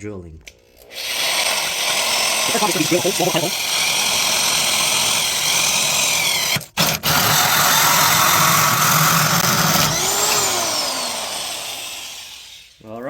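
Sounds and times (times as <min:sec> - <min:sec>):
power drill cutting metal: 0:00.7 - 0:12.8.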